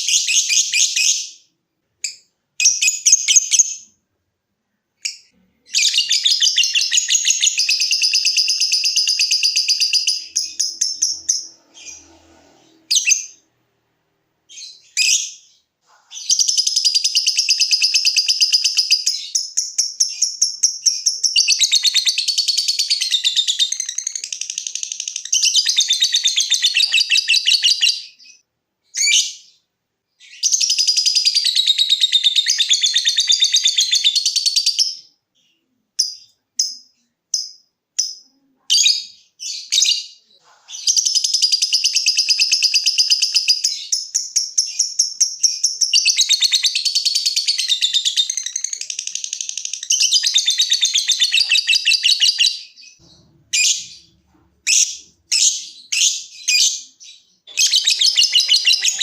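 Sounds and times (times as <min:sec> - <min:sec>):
sharp bird chirps: 0:05.0 - 0:13.4, 0:30.2 - 0:59.0
lovebird chattering trill: 0:54.7 - 0:59.0.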